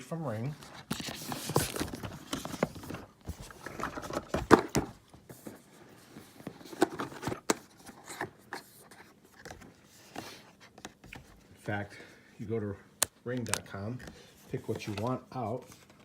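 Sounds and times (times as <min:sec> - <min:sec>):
packaging scraping and rustling: 0:00.5 - 0:10.4.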